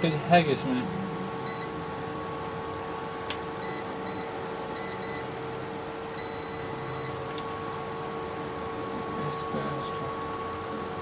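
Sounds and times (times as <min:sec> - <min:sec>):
steady hum: 0:00.0 - 0:11.0
multimeter beeping: 0:01.4 - 0:01.7, 0:03.6 - 0:05.3, 0:06.2 - 0:07.2.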